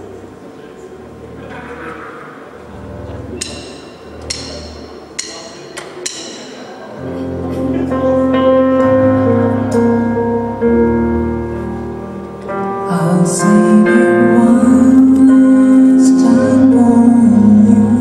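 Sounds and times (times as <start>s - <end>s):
keyboard chords: 0.0s - 18.0s
bass line: 7.5s - 18.0s
person singing: 12.6s - 18.0s.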